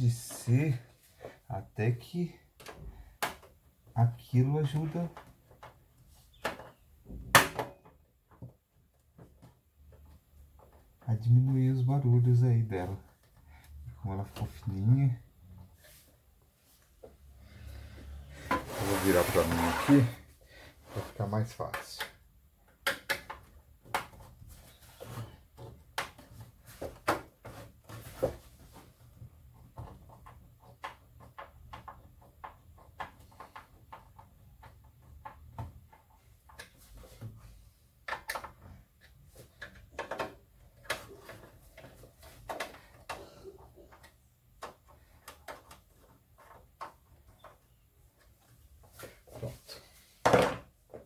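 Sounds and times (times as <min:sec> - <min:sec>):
cables being moved: 0:12.9 - 0:22.1.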